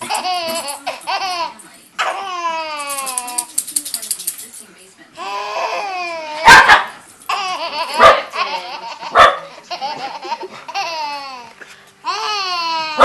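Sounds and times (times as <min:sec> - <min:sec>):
baby laughing and squealing: 0:00.0 - 0:03.3, 0:07.3 - 0:11.5
dog barking: 0:06.4 - 0:07.0, 0:08.0 - 0:08.3, 0:09.1 - 0:09.5.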